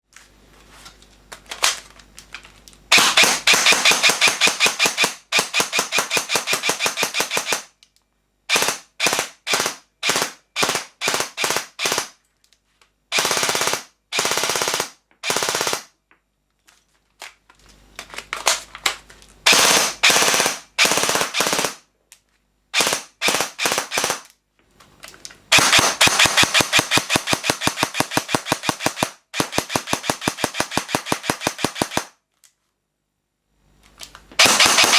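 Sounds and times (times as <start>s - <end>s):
airsoft gun full-auto bursts: 2.9s - 7.7s, 8.5s - 12.2s, 13.1s - 15.9s, 19.5s - 21.9s, 22.8s - 24.3s, 25.5s - 32.2s, 34.4s - 34.9s
airsoft gun single shots: 34.4s - 34.9s.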